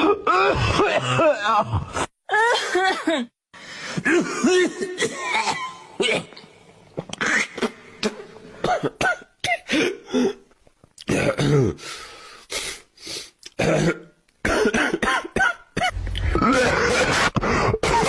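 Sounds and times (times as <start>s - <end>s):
people coughing: 4.1s - 6.4s, 13.6s - 18.0s.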